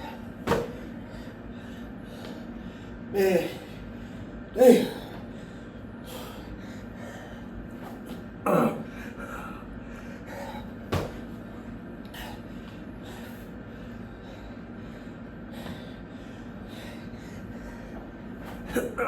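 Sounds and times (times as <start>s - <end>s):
man breathing hard and gasping: 0.0s - 7.7s, 8.7s - 19.0s
sharp thump: 0.5s - 0.8s.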